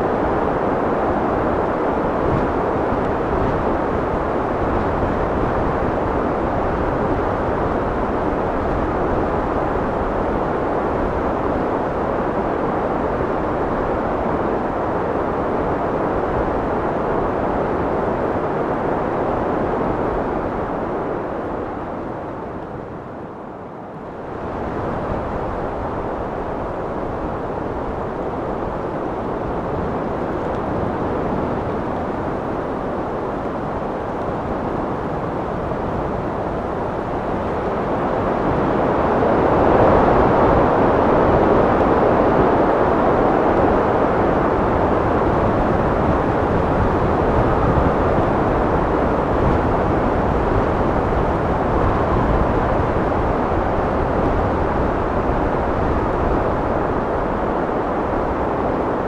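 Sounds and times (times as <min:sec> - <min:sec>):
wind blowing: 0:24.1 - 0:59.0.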